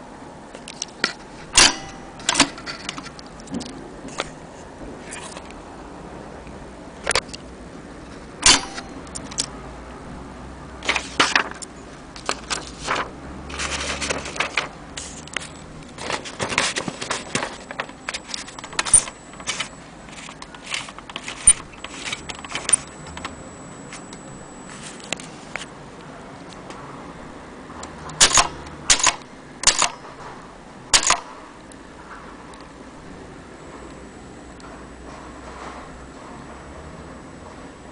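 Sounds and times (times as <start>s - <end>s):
metal mechanism clicking and rattling: 0.6s - 4.3s, 8.4s - 9.5s, 10.8s - 23.3s, 28.2s - 30.0s, 30.9s - 31.3s
faint high whine: 17.3s - 26.1s.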